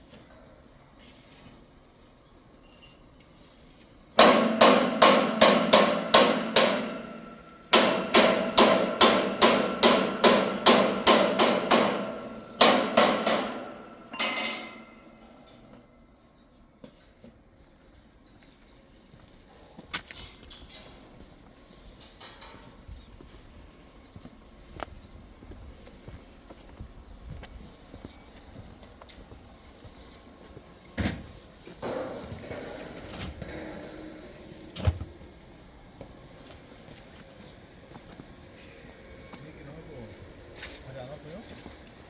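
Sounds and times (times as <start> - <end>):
hammer striking metal: 4.2 - 15.3, 31.8 - 35.3.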